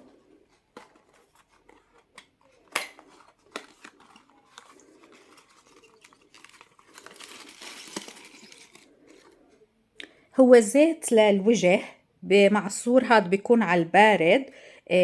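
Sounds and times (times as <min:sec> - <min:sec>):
packing crinkling: 0:00.4 - 0:09.4.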